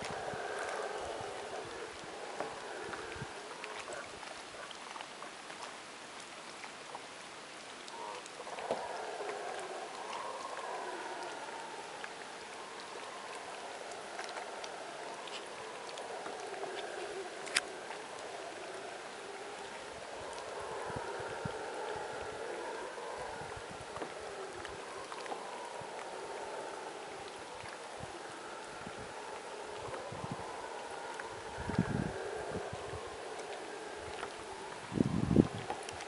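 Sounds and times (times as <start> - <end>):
faint ticks: 0.0 - 36.0.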